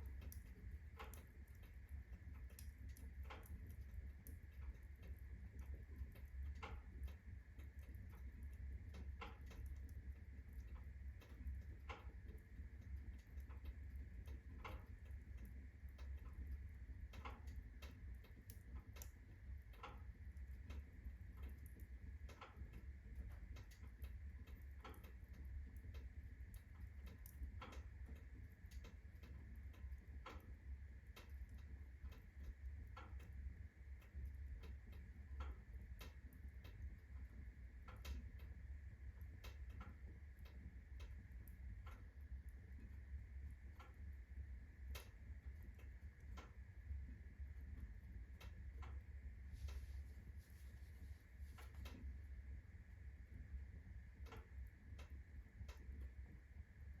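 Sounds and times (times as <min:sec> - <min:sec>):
fire crackling and popping: 0:00.0 - 0:44.2
low fire rumble: 0:00.0 - 0:57.0.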